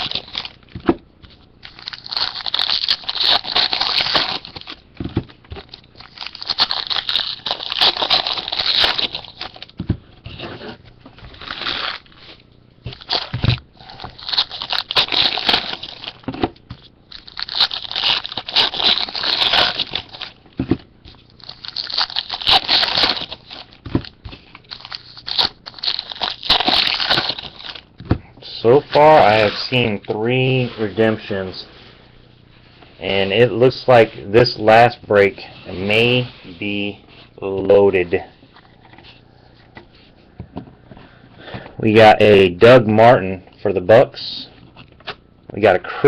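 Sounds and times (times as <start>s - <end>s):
card packs tearing: 0.0s - 0.8s, 1.6s - 27.9s
wrappers crinkling: 0.0s - 31.8s.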